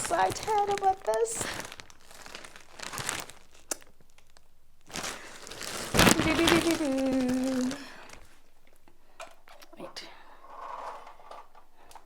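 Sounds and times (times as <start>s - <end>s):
packaging crinkling and rustling: 0.0s - 9.6s.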